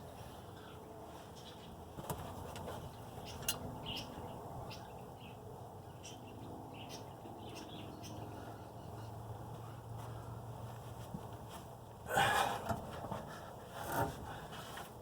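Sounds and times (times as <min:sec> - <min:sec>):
low steady background noise: 0:00.0 - 0:15.0.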